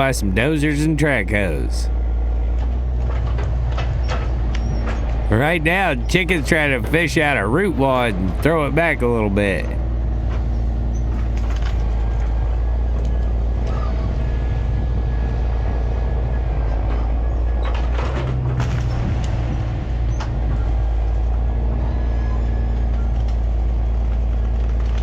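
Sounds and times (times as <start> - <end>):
diesel truck engine running: 0.0 - 25.0.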